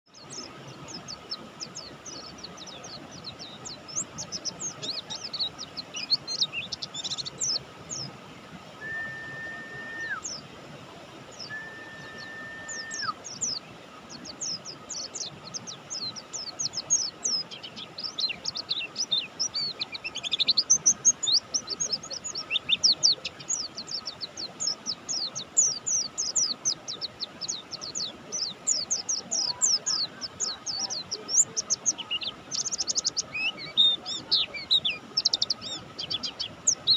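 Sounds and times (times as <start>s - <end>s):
long level bird whistles: 8.8s - 10.3s, 11.4s - 13.2s
bird twittering: 11.4s - 13.6s.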